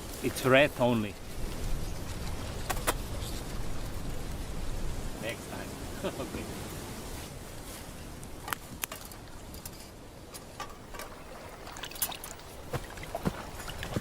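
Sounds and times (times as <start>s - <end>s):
water trickling and lapping: 5.7s - 14.0s.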